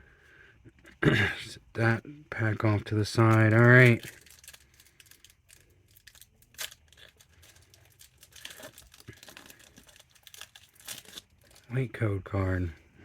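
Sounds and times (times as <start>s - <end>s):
foil wrapper crinkling: 2.8s - 11.8s.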